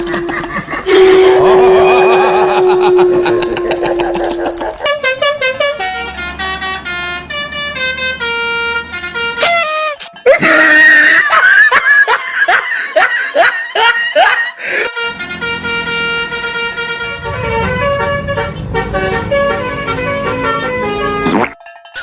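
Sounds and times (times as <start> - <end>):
low engine rumble: 0.0 - 9.4, 14.9 - 21.3
multi-tone bus horn tune: 0.0 - 10.4, 14.6 - 21.6.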